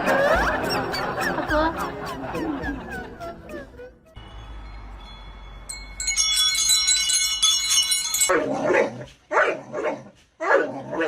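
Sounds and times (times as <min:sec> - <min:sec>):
chime-like ringing tones: 0:04.2 - 0:08.3.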